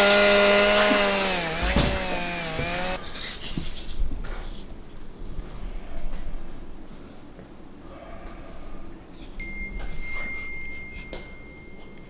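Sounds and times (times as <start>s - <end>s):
chainsaw engine at high revs: 0.0s - 3.0s.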